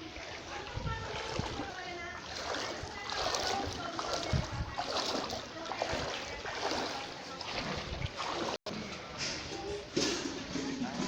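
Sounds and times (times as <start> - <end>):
flood water splashing: 0.0 - 8.7.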